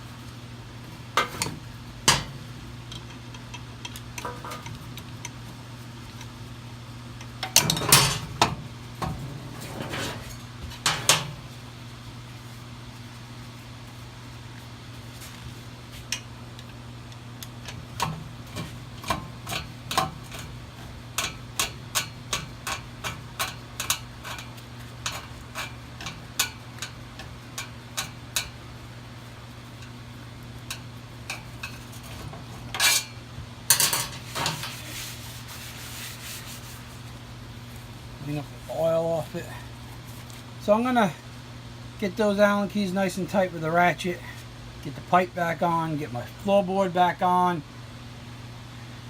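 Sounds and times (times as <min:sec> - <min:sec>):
steady low hum: 0:00.0 - 0:49.0
brief rubbing scrapes: 0:34.2 - 0:37.0.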